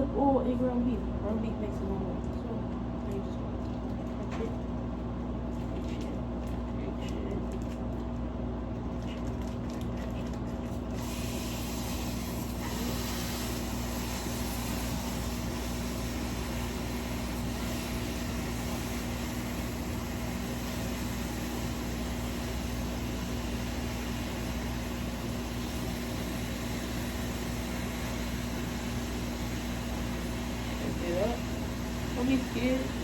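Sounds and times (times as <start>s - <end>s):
meat sizzling in a hot pan: 11.0s - 33.0s.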